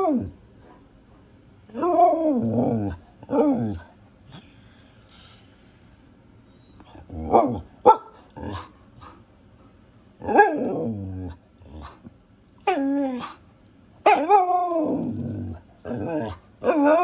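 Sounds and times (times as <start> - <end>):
dog barking and howling calls: 0.0 - 0.8, 1.7 - 3.9, 6.6 - 8.7, 10.2 - 12.0, 12.6 - 13.4, 14.0 - 17.0.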